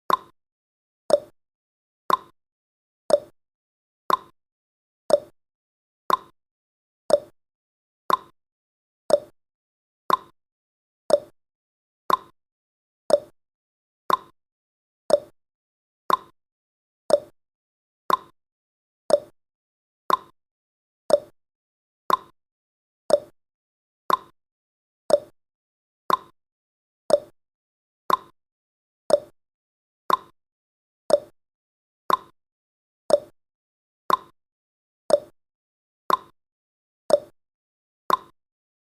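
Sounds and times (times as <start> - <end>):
clock ticking: 0.1 - 0.3, 2.1 - 2.3, 4.1 - 4.3, 6.1 - 6.3, 8.1 - 8.3, 10.1 - 10.3, 12.1 - 12.3, 14.1 - 14.3, 16.1 - 16.3, 17.1 - 17.3, 18.1 - 18.3, 20.1 - 20.3, 22.1 - 22.3, 24.1 - 24.3, 26.1 - 26.3, 28.1 - 28.3, 30.1 - 30.3, 31.1 - 31.3, 32.1 - 32.3, 33.1 - 33.4, 34.1 - 34.3, 35.1 - 35.4, 36.1 - 36.4, 37.1 - 37.4, 38.1 - 38.4.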